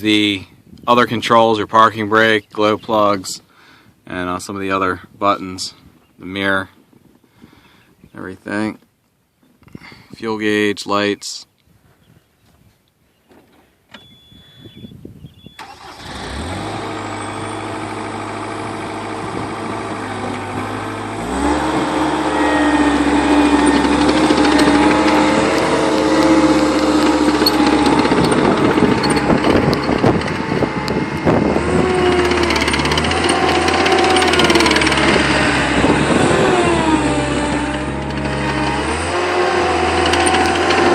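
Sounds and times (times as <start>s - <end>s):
diesel engine starting and idling: 15.6s - 40.9s.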